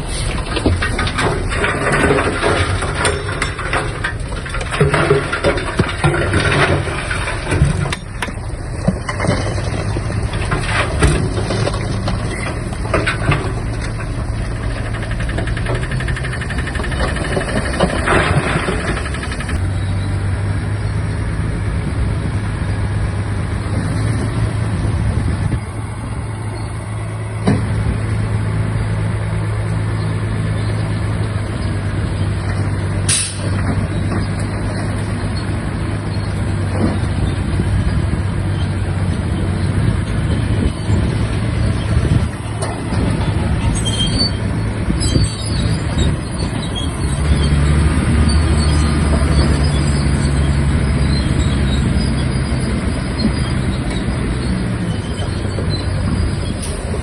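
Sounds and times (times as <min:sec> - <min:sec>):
knocks and clanks: 0:00.0 - 0:19.7, 0:27.4 - 0:27.9, 0:32.4 - 0:57.0
bulldozer diesel engine running: 0:00.0 - 0:57.0.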